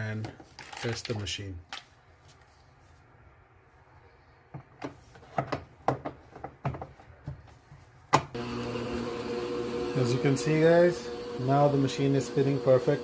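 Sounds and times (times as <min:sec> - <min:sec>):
washer motor humming: 0:08.4 - 0:13.0.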